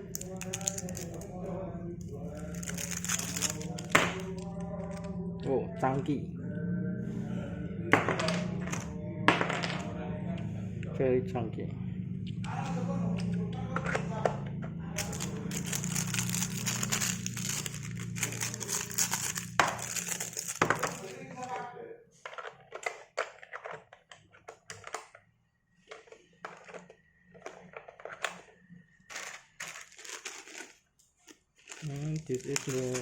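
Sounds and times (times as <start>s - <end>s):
plastic game pieces clicking: 0.0s - 1.3s, 2.3s - 4.5s, 15.0s - 21.1s, 31.7s - 33.0s
plastic packaging crinkling: 0.0s - 1.3s, 2.1s - 5.0s, 15.0s - 21.5s, 29.0s - 33.0s.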